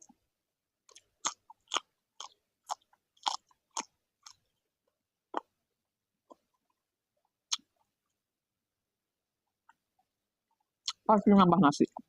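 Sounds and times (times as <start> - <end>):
crunchy chewing: 0.9 - 4.5.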